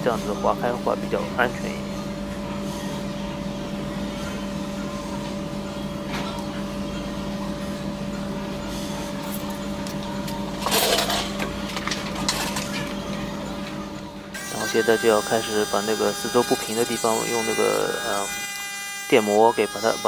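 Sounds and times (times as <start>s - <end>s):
small electric motor humming: 14.3s - 20.0s.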